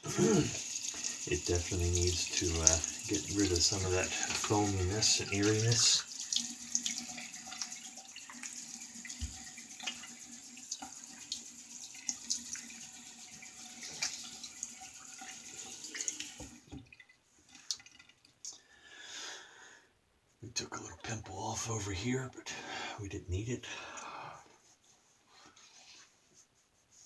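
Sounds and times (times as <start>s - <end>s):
tap water running into sink: 0.0s - 18.3s.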